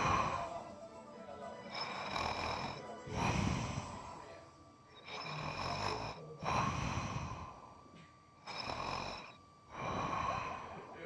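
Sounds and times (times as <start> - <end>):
person snoring: 0.0 - 0.6, 1.7 - 7.8, 8.4 - 11.0.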